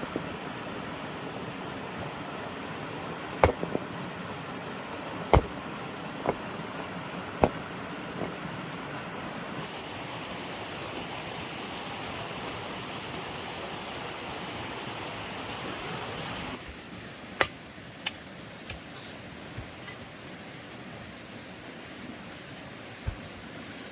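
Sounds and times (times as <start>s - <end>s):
sharp knocks: 3.4s - 3.8s, 5.3s - 5.5s.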